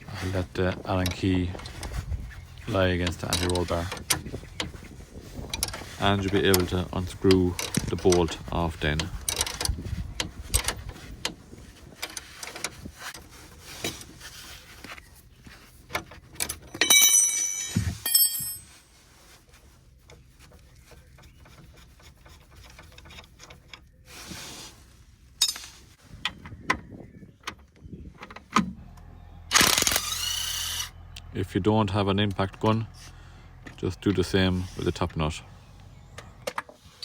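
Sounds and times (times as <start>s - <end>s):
metal clicks and knocks: 5.4s - 11.4s, 20.1s - 23.9s
ringing metallic clink: 16.8s - 18.6s
tools scraping on metal: 20.0s - 24.8s.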